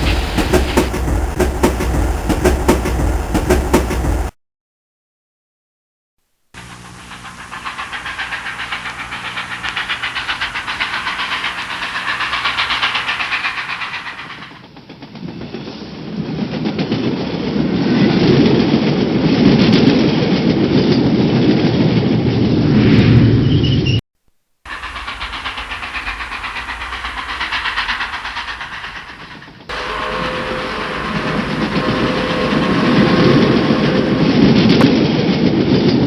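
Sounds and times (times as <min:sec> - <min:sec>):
low hum: 0:00.0 - 0:04.3, 0:24.8 - 0:35.0
rumbling train passing: 0:00.0 - 0:04.4, 0:06.6 - 0:23.4, 0:24.7 - 0:36.0
train clattering: 0:00.0 - 0:04.4, 0:06.6 - 0:17.7, 0:24.7 - 0:35.8.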